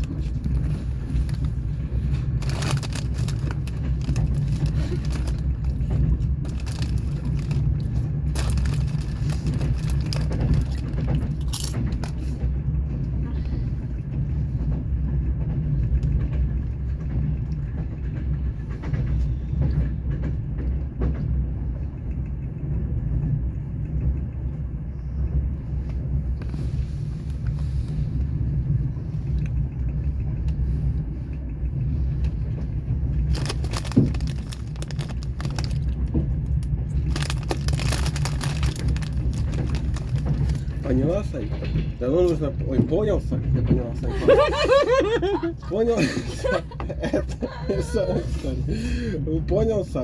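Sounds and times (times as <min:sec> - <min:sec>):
train carriage rumbling on rails: 0:00.0 - 0:50.0
loud rattling: 0:01.1 - 0:12.3, 0:33.2 - 0:42.0.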